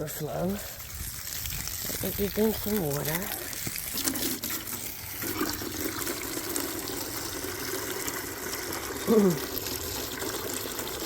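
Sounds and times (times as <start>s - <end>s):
water running into a container: 0.0s - 11.0s
short falling vocal sound: 9.0s - 9.5s.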